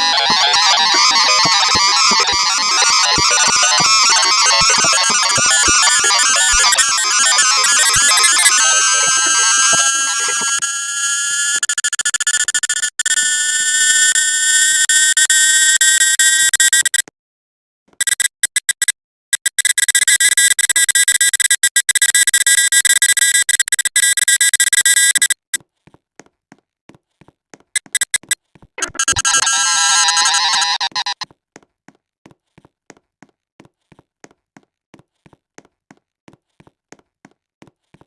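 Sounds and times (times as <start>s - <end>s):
electronic buzzing tones: 0.0s - 17.0s, 27.8s - 31.2s.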